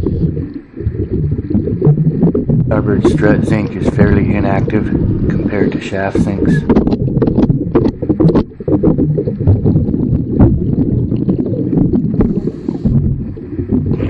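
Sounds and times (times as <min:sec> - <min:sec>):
underwater breathing and bubbles: 0:00.0 - 0:14.0
quick clicks and crackles: 0:06.6 - 0:13.0.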